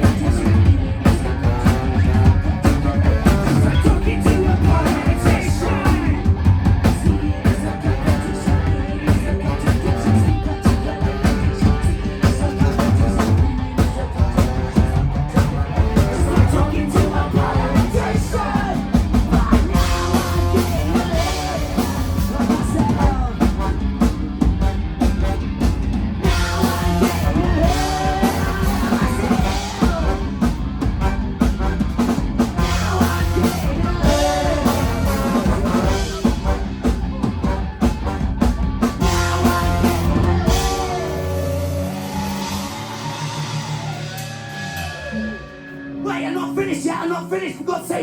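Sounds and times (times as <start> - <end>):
person singing: 0.0 - 23.8, 26.3 - 30.6, 32.6 - 36.7, 39.0 - 44.2
drum kit: 0.0 - 45.4
live rock band playing: 0.0 - 46.7.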